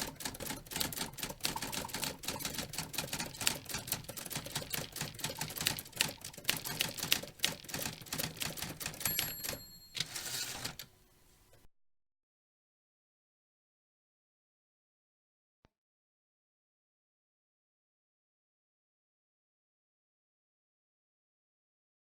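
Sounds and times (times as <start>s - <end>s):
typewriter keys clattering: 0.0s - 10.9s
typewriter bell ring: 8.8s - 10.8s
carriage return rasp: 9.9s - 10.9s.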